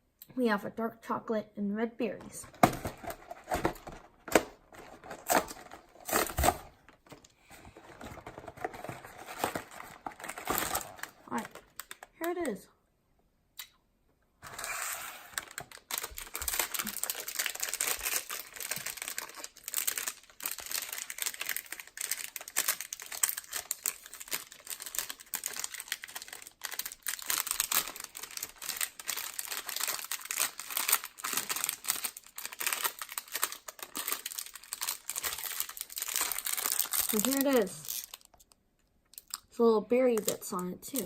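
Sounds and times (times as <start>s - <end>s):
wrapper crinkling: 2.6s - 12.3s, 14.4s - 39.5s
wrapper tearing: 8.0s - 12.2s, 14.4s - 39.5s.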